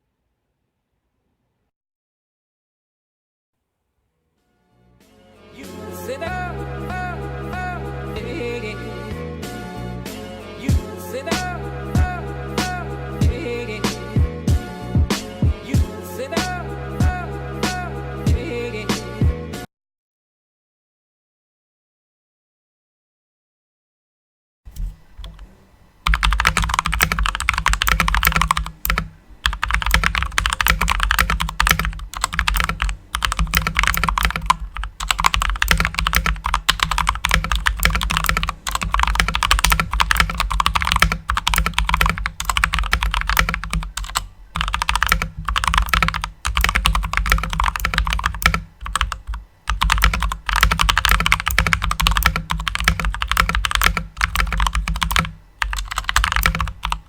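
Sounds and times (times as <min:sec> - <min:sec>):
fast typing on mechanical keyboard: 0:25.2 - 0:25.4, 0:26.0 - 0:57.0.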